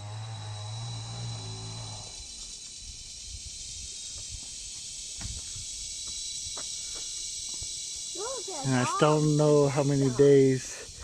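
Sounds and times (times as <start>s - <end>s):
low hum: 0.0s - 2.6s
insects chirring: 0.0s - 11.0s.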